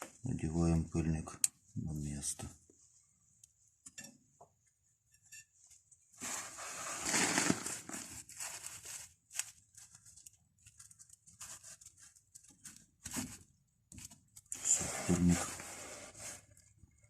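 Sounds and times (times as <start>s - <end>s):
rubber boot rustling and rubbing: 6.2s - 9.2s.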